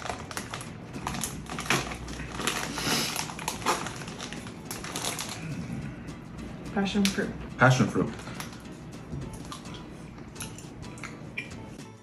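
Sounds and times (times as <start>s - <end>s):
candy packaging crinkling: 0.0s - 5.6s.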